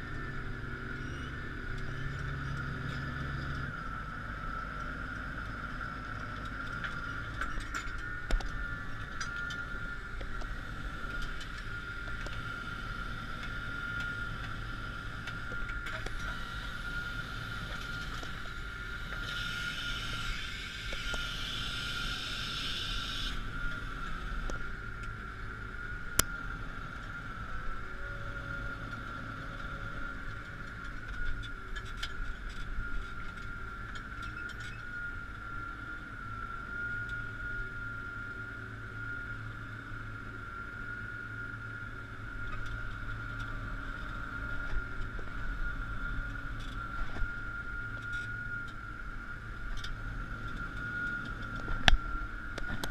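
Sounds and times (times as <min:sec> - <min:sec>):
tractor diesel engine drone: 0:00.0 - 0:52.9
hiss: 0:19.0 - 0:23.5.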